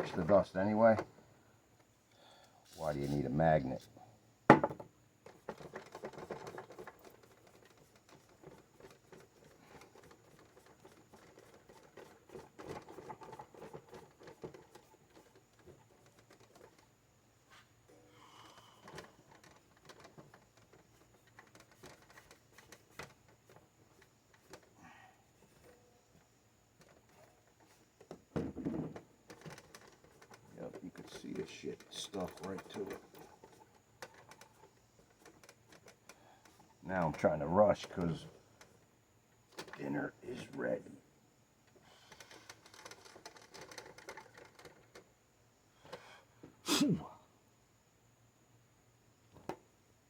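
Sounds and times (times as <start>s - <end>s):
knock on metal grate: 4.5s - 4.8s.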